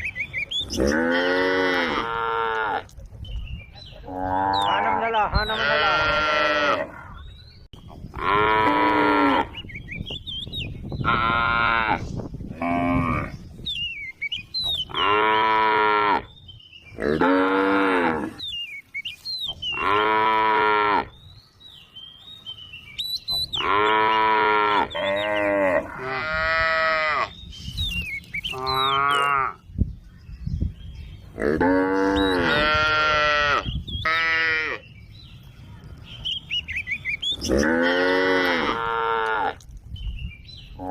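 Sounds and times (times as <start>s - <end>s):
cows mooing: 0.7s - 2.9s, 4.0s - 7.2s, 8.2s - 9.6s, 11.0s - 13.4s, 14.9s - 16.3s, 17.0s - 18.4s, 19.8s - 21.1s, 23.5s - 27.3s, 28.5s - 29.6s, 31.4s - 34.8s, 37.4s - 39.6s.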